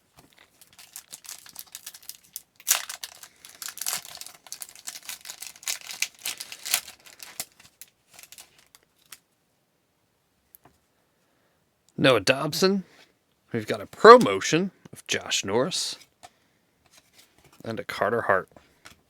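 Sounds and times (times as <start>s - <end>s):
wrapper crinkling and tearing: 0.1s - 9.2s.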